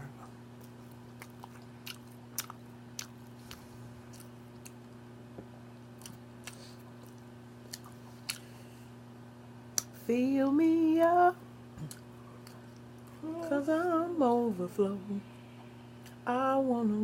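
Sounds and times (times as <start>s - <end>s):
steady low hum: 0.0s - 17.0s
person chewing with wet mouth smacks: 0.6s - 5.0s, 6.0s - 8.6s, 11.8s - 13.2s.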